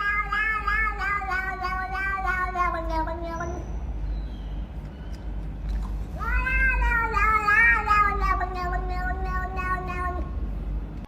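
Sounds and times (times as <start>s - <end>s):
pet wailing cry: 0.0s - 3.7s, 6.2s - 10.2s
steady low hum: 0.0s - 11.0s.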